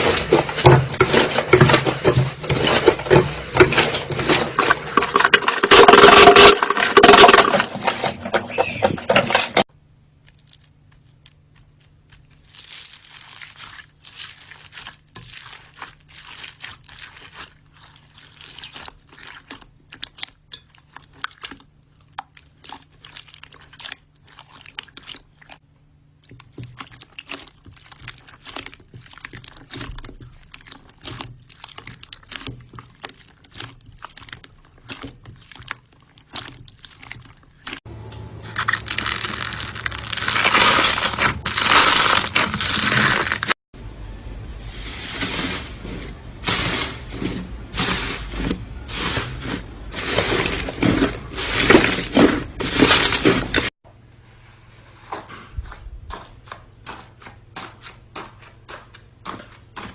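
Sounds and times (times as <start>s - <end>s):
slime crackling and popping: 10.2s - 37.8s, 38.5s - 43.5s.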